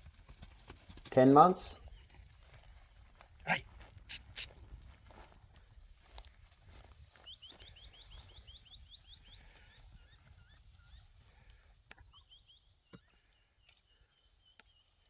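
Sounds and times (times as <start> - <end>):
bird chirping: 1.7 - 2.2, 6.8 - 15.0.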